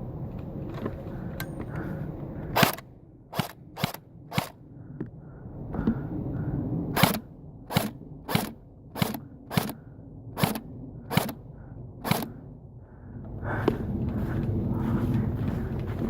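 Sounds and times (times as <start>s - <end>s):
airsoft gun shots: 2.6s - 4.6s, 7.0s - 9.8s, 10.4s - 11.4s, 12.0s - 12.3s.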